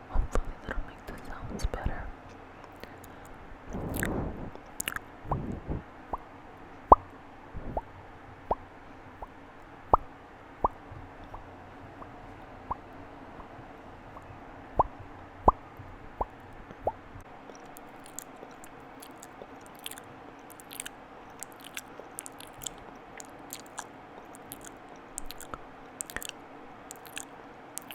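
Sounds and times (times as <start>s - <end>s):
wet mouth pops: 3.7s - 6.2s, 17.5s - 27.9s.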